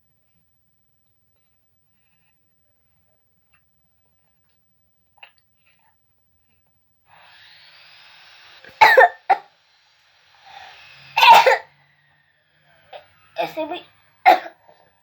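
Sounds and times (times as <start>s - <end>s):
child drawing breath: 7.1s - 8.8s, 10.2s - 15.0s
child coughing: 8.8s - 9.4s, 11.2s - 11.7s, 14.2s - 14.6s.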